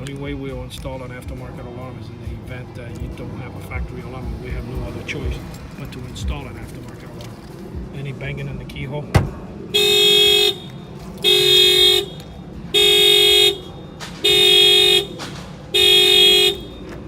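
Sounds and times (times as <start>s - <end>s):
car horn blasts: 9.7s - 17.0s.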